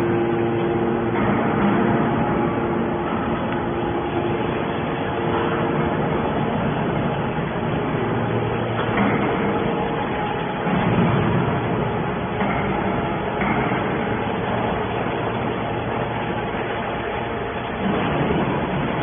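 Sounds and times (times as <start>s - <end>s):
baler machine running: 0.0s - 19.0s.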